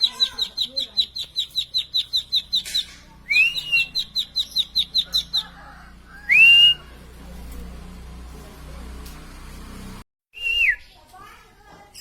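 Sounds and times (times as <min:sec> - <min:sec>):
rising whistled bird notes: 0:03.3 - 0:05.0, 0:10.4 - 0:11.0.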